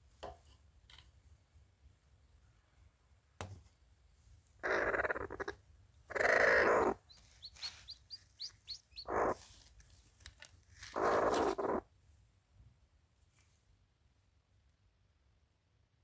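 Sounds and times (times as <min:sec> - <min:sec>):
birds chirping: 0:06.1 - 0:09.4.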